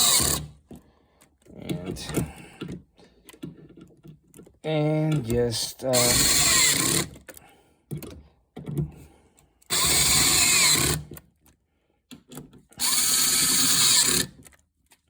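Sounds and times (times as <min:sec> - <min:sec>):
power drill running: 0:00.0 - 0:00.5, 0:06.0 - 0:07.1, 0:09.7 - 0:11.1, 0:12.8 - 0:14.4.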